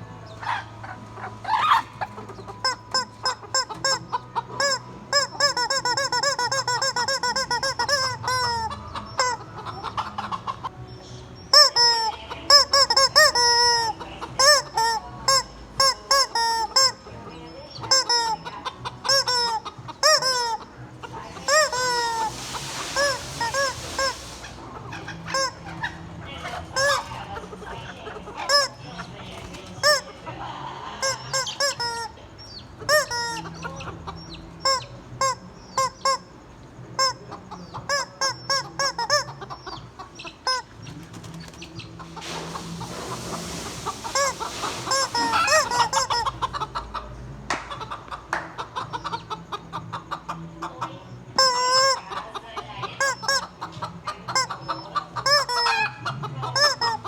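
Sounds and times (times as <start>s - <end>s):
chickens clucking: 0.0s - 57.0s.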